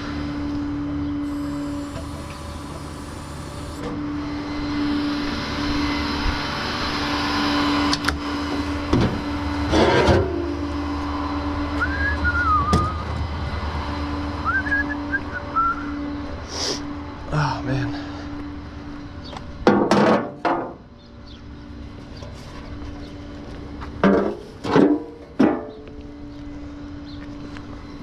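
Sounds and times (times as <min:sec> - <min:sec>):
vehicle engine idling: 0:10.3 - 0:19.6.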